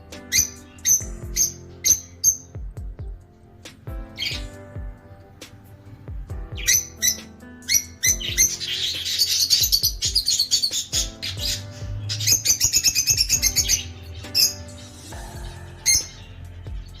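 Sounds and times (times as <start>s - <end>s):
sharp bird calls: 0.0s - 2.7s, 6.6s - 17.0s
lovebirds chirping: 0.0s - 17.0s.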